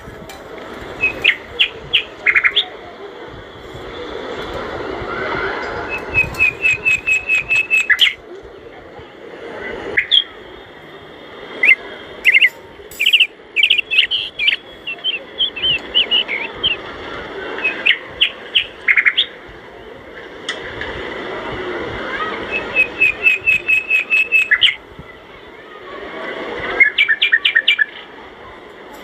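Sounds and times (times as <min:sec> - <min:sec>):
bird whistles: 0:01.0 - 0:02.7, 0:05.9 - 0:08.2, 0:11.6 - 0:16.8, 0:17.6 - 0:19.4, 0:22.5 - 0:24.8
birds chirping: 0:01.0 - 0:02.8, 0:05.9 - 0:08.2, 0:10.0 - 0:10.4, 0:11.5 - 0:19.4, 0:22.4 - 0:24.8, 0:26.8 - 0:28.1.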